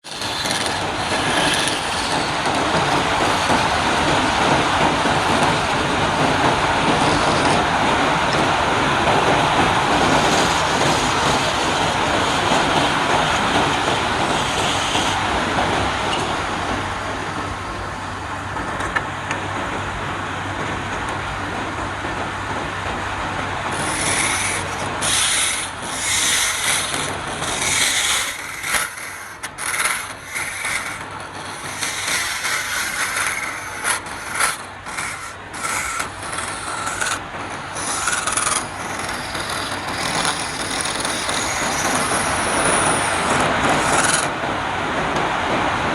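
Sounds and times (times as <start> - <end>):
turning tool scraping wood: 0.0 - 15.2, 23.6 - 44.4
wood lathe humming: 0.0 - 18.6, 22.8 - 44.9.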